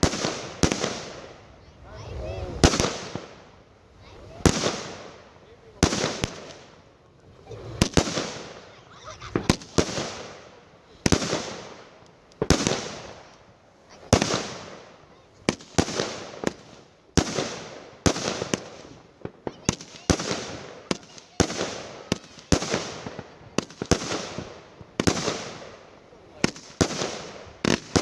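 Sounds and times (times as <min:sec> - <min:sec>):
fireworks banging and crackling: 0:00.0 - 0:28.0.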